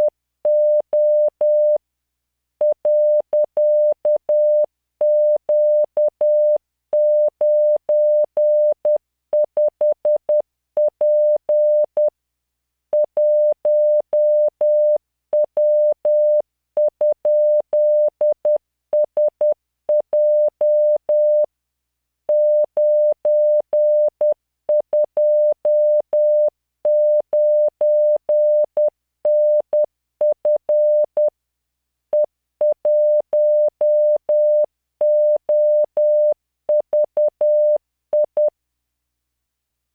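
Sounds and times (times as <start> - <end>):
morse code tone: 32.2 - 38.5.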